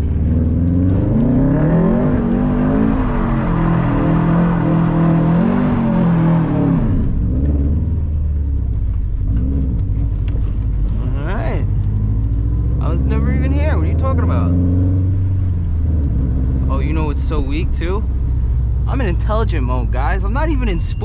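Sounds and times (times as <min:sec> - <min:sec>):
car engine revving hard: 0:00.0 - 0:08.0, 0:11.9 - 0:17.3
car engine idling: 0:07.0 - 0:21.0.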